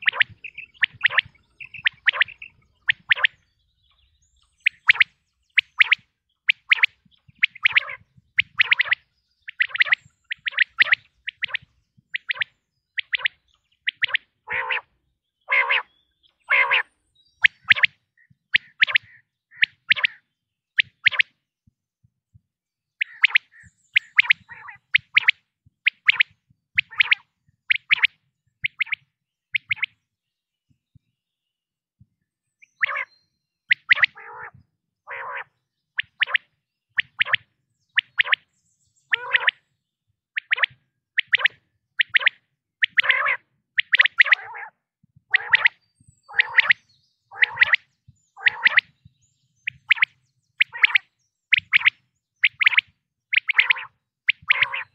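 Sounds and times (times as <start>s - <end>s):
low rasping quail calls: 0.0s - 3.4s, 4.6s - 14.9s, 15.5s - 15.9s, 16.5s - 20.2s, 23.0s - 30.0s, 32.8s - 33.1s, 33.7s - 38.4s, 39.1s - 39.6s, 40.4s - 49.0s, 49.6s - 54.9s
quail calling: 0.0s - 3.4s, 4.6s - 14.9s, 15.5s - 18.0s, 18.6s - 20.2s, 23.0s - 29.0s, 32.7s - 33.1s, 33.7s - 37.4s, 39.1s - 39.6s, 40.4s - 48.9s, 49.7s - 54.9s.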